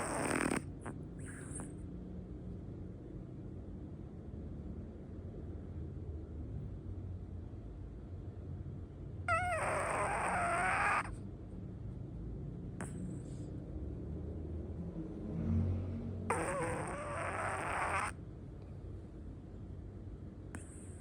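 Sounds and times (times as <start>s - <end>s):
dog snoring: 0.0s - 1.8s, 9.2s - 11.2s, 12.8s - 13.5s, 16.2s - 18.2s, 20.5s - 21.0s
dog whining: 0.0s - 1.8s, 9.2s - 11.2s, 16.3s - 18.2s
low steady rumble: 18.1s - 21.0s.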